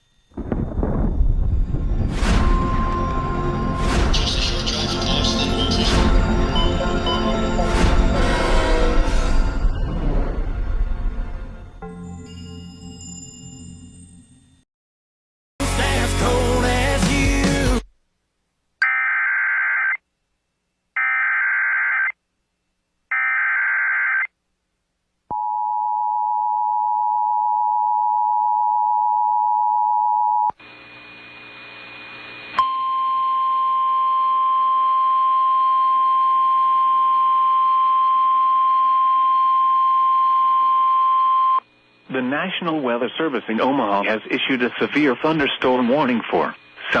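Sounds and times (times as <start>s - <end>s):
steady single-pitch alert tone: 2.4s - 7.6s
two-tone attention signal: 4.8s - 7.5s
hissy static and hum: 30.5s - 32.6s, 41.6s - 47.0s.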